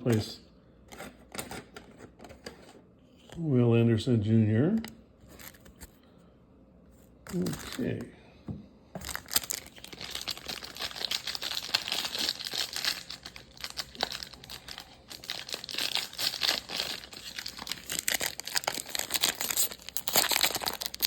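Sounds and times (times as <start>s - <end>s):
foil wrapper crinkling: 7.3s - 8.0s, 9.0s - 21.0s.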